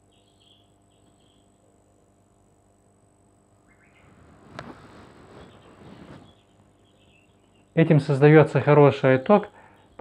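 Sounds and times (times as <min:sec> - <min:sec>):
faint high chirps: 0:00.0 - 0:01.8
faint high whine: 0:00.0 - 0:10.0
low electrical hum: 0:00.0 - 0:10.0.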